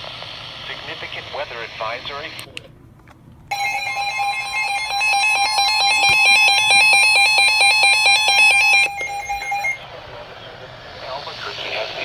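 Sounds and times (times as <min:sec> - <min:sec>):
steady electronic alert tone: 0:03.5 - 0:09.8.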